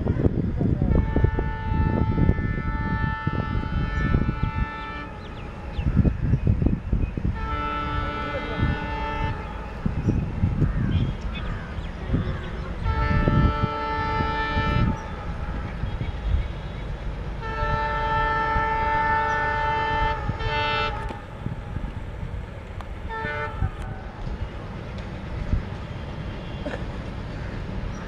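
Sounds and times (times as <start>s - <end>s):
locomotive horn blasts: 0.8s - 5.7s, 7.2s - 10.2s, 12.8s - 21.3s, 23.0s - 24.2s.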